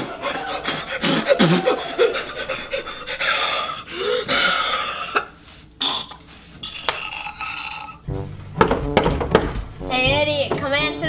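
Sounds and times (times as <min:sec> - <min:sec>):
person gasping and crying out: 0:00.0 - 0:05.3
heavy breathing: 0:00.0 - 0:08.0.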